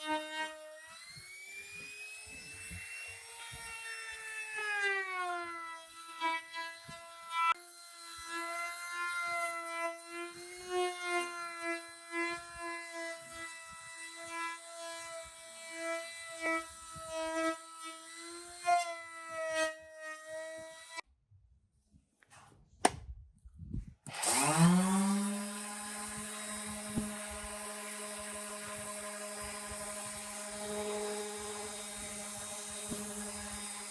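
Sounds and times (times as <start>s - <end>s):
motor spinning up: 0.0s - 5.1s, 24.1s - 33.9s
power tool motor whine: 0.0s - 21.0s, 24.1s - 33.9s.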